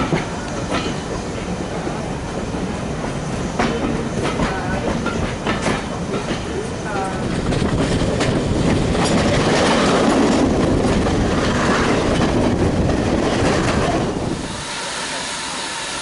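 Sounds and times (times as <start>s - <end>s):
train wheels clattering on rails: 0.0s - 14.6s.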